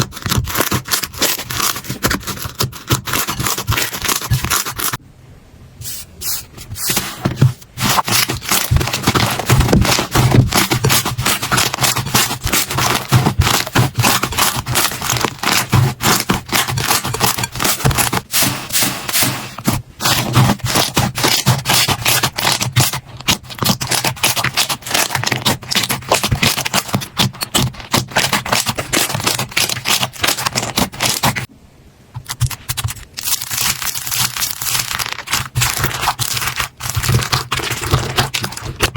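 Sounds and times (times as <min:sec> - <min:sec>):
slime crackling and popping: 0:07.9 - 0:18.2, 0:32.7 - 0:38.9.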